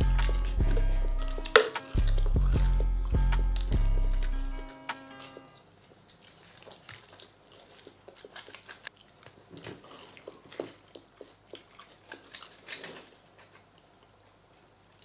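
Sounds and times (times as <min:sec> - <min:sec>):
chewing and crunching: 0:05.6 - 0:15.0.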